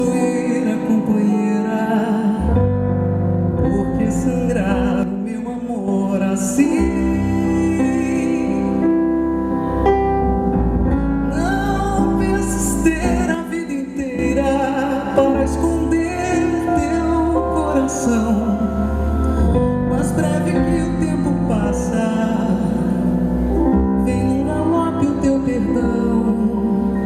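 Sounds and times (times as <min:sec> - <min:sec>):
deep bass: 0:00.0 - 0:27.0
woman singing: 0:11.4 - 0:19.0, 0:24.0 - 0:27.0.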